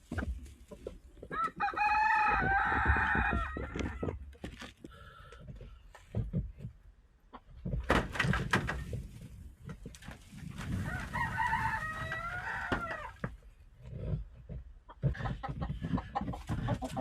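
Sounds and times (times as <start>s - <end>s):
rooster crowing: 1.3s - 4.0s, 10.8s - 13.2s.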